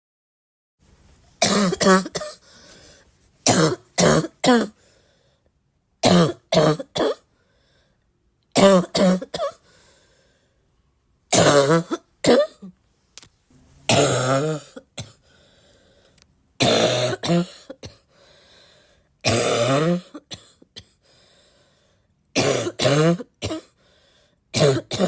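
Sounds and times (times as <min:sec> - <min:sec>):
girl coughing: 0:01.4 - 0:02.4, 0:03.5 - 0:04.8, 0:06.0 - 0:07.3, 0:08.6 - 0:09.6, 0:11.3 - 0:12.8, 0:13.9 - 0:15.2, 0:16.6 - 0:18.1, 0:19.2 - 0:21.0, 0:22.4 - 0:23.8, 0:24.6 - 0:25.0.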